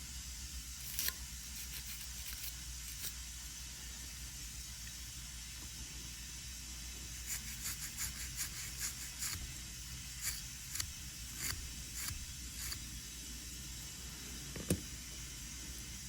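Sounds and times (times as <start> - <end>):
toothbrush scrubbing circuit board: 0.8 - 3.2, 7.1 - 13.0.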